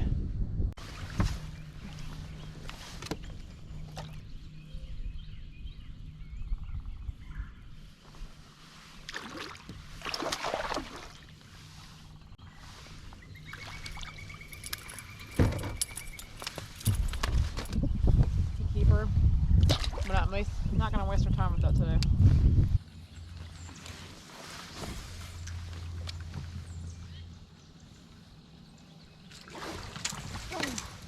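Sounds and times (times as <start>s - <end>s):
handling or water noise: 0.8s - 4.6s, 7.9s - 17.8s, 22.8s - 27.1s, 29.2s - 31.0s.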